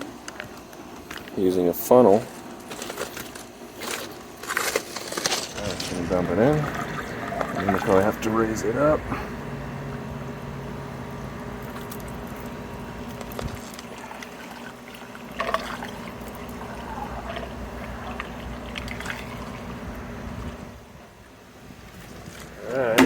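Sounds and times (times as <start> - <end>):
liquid pouring and trickling: 5.5 - 8.8, 13.3 - 20.0.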